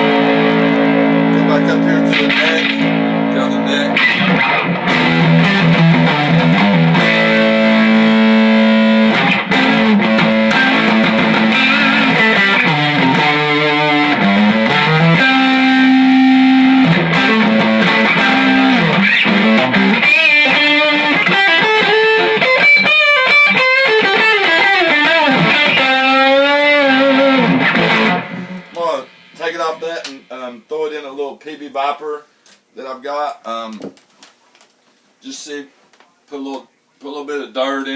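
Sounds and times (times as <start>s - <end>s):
overdriven electric guitar: 0.0s - 29.4s.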